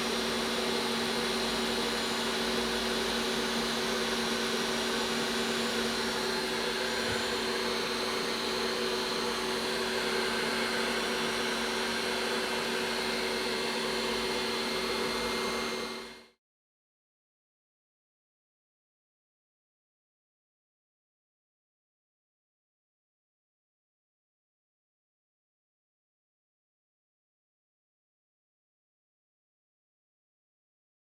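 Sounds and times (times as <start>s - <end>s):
hot air rework station blowing: 4.4s - 16.0s.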